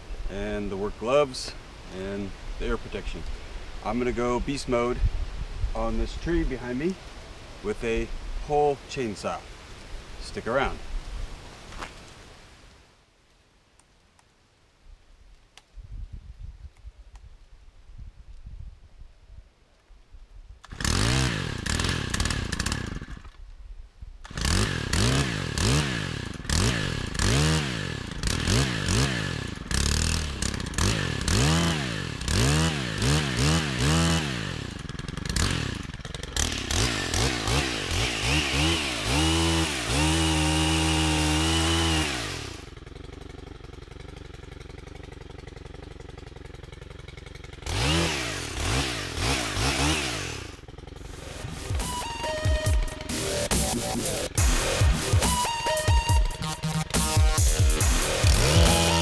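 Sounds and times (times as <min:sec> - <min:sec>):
chainsaw revving: 0:20.6 - 0:23.4, 0:24.2 - 0:59.0.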